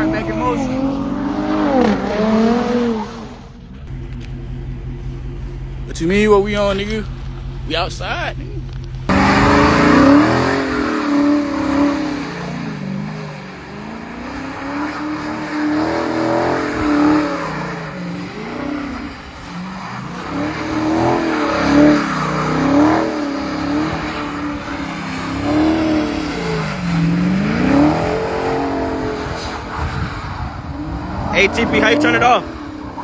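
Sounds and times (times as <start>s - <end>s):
car engine revving: 0.0s - 33.0s
wheels spinning in snow: 8.1s - 33.0s.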